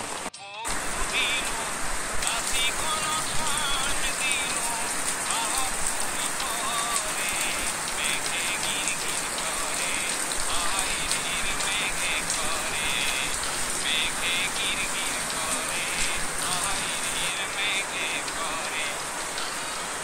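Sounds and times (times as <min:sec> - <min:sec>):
rain falling on foliage: 0:00.0 - 0:20.0.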